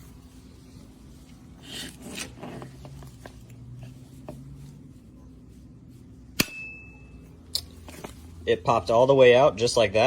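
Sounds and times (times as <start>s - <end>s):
soft rustling: 0.0s - 6.3s
low steady hum: 0.0s - 10.0s.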